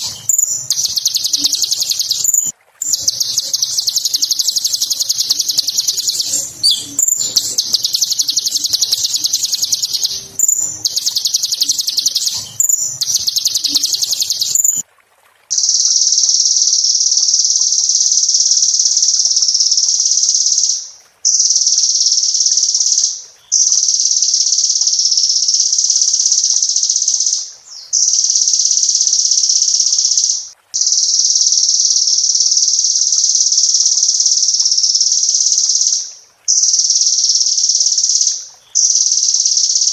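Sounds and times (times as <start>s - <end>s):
bird chattering trills: 0.0s - 14.8s
bird high buzzing trills: 0.0s - 14.8s.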